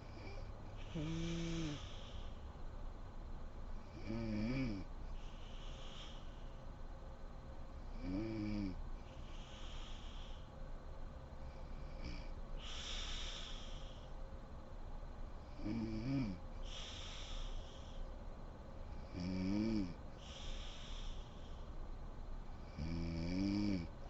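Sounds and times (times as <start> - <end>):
woman snoring: 0.0 - 2.2, 3.9 - 4.9, 8.0 - 8.8, 15.5 - 17.7, 19.0 - 21.4, 22.7 - 23.9
hissing out-breath: 0.8 - 2.4, 5.2 - 6.6, 9.2 - 10.5, 12.6 - 14.1, 16.6 - 18.1, 20.2 - 21.7.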